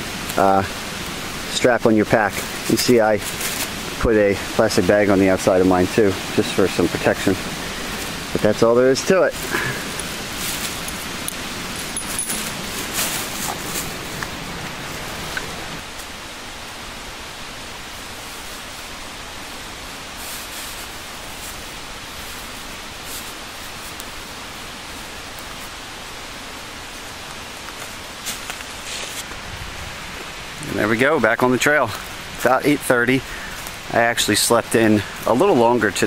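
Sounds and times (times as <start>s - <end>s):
steady rushing noise: 0.0s - 36.0s
light rustling: 2.3s - 3.8s, 9.3s - 16.2s, 27.2s - 29.4s.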